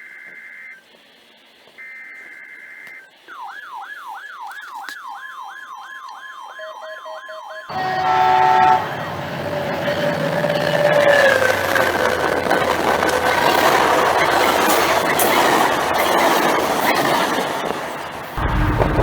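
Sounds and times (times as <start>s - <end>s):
electronic warble siren: 1.8s - 17.0s
harsh multi-pitch blaring: 5.4s - 19.0s
steady tone: 18.2s - 19.0s.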